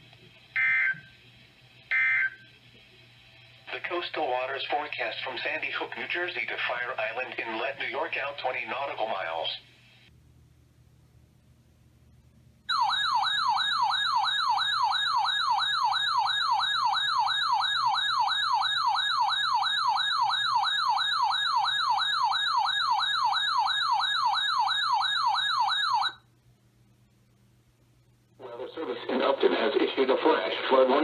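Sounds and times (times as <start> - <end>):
electronic warbling alert siren: 12.7 - 26.2.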